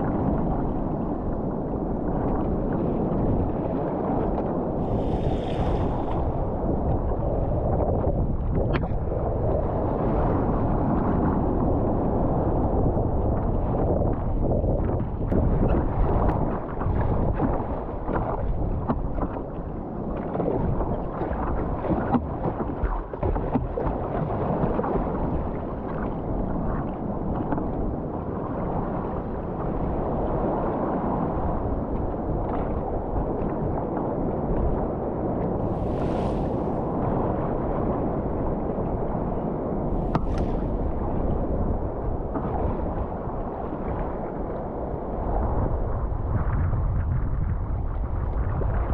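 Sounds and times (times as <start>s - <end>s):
gale wind buffeting microphone: 0.0s - 48.9s
breaking waves: 4.7s - 7.6s, 35.6s - 39.2s, 39.8s - 43.4s.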